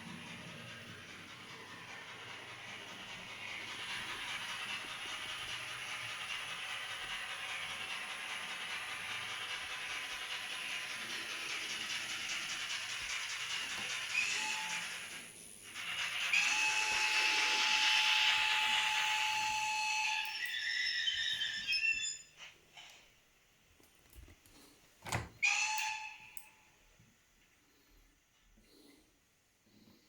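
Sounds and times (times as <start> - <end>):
steam hiss: 0.0 - 20.3
steam locomotive chuffing: 0.0 - 22.5.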